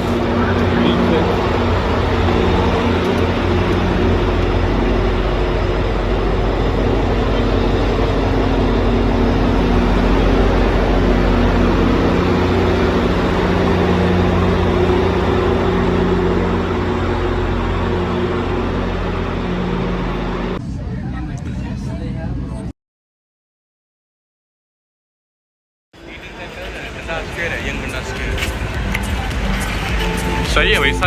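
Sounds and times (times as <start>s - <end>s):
engine rumble with low hum: 0.0s - 22.7s.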